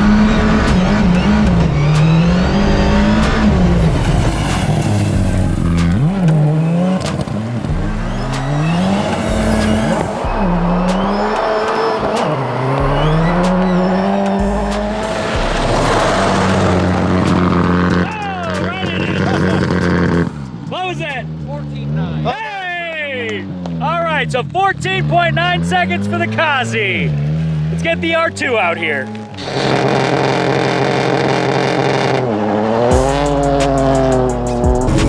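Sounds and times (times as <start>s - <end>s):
sharp cracks: 0.0s - 20.4s
rally car engine revving: 0.0s - 35.0s.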